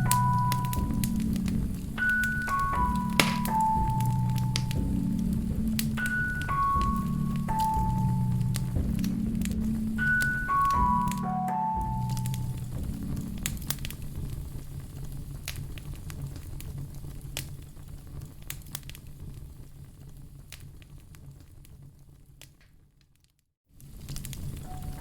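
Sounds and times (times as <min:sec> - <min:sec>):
low rumble of flames: 0:00.0 - 0:23.1, 0:23.7 - 0:25.0
wood fire crackling: 0:00.0 - 0:25.0.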